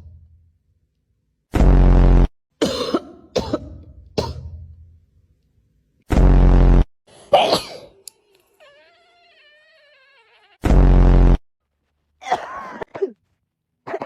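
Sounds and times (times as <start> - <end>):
person coughing: 2.6 - 4.5, 7.3 - 8.0, 12.2 - 13.2.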